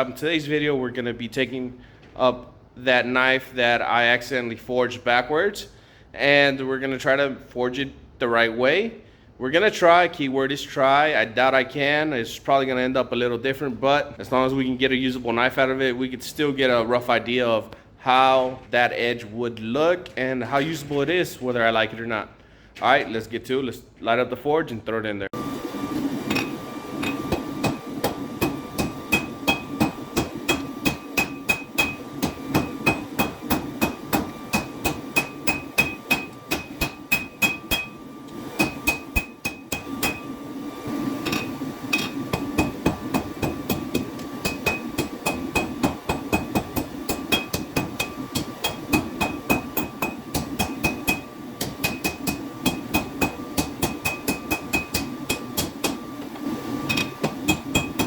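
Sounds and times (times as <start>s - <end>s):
steady hum: 0.0s - 58.0s
hammer striking hot steel on anvil: 26.3s - 40.4s, 41.3s - 56.2s, 56.9s - 58.0s.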